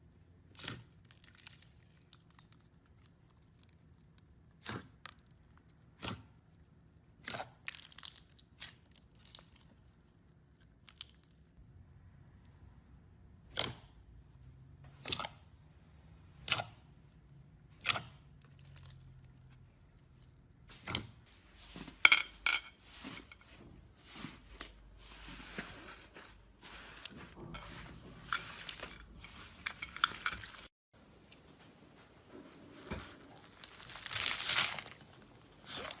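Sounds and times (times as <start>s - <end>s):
slime crackling and crinkling: 0.4s - 11.6s, 32.6s - 36.0s.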